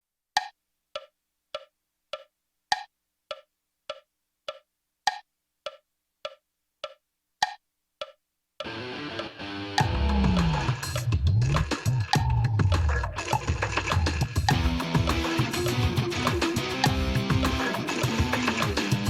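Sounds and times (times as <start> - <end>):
band playing: 8.7 - 19.0.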